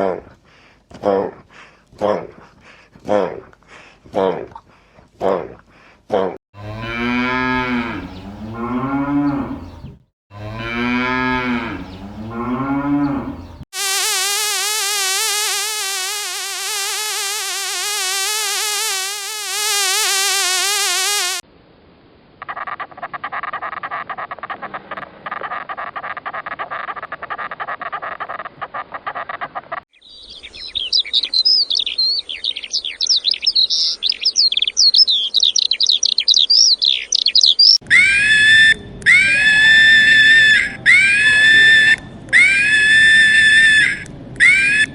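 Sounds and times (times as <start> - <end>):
cattle mooing: 10.3 - 13.5
high fast chirping: 13.8 - 21.4
long wavering call: 13.8 - 21.4
rapid buzzing drone: 13.8 - 21.4.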